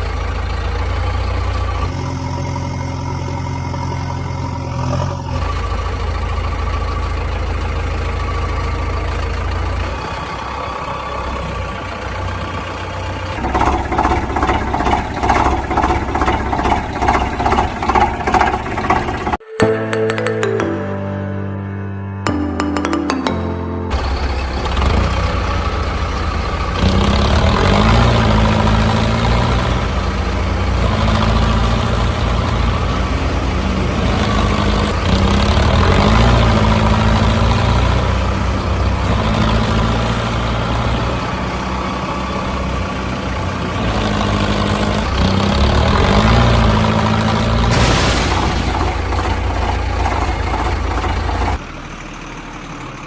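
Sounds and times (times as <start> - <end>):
truck engine revving: 0.0 - 19.4, 23.9 - 51.8
synth chords: 19.4 - 25.2.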